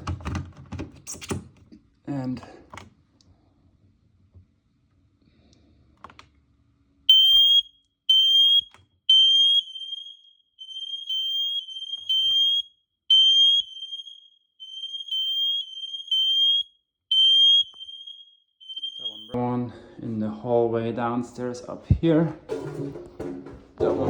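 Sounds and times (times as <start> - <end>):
smoke alarm beeping: 7.1 - 19.4.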